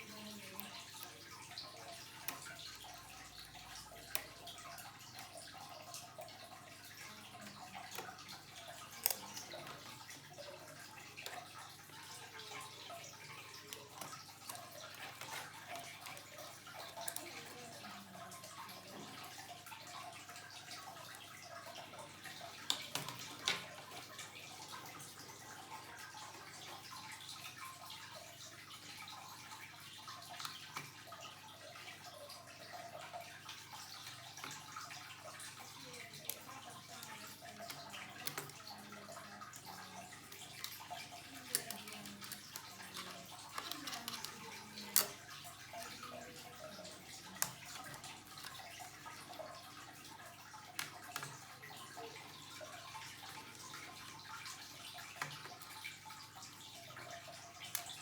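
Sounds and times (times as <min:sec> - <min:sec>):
light clicks and taps: 0:00.0 - 0:17.8, 0:18.6 - 0:25.2, 0:33.5 - 0:49.7.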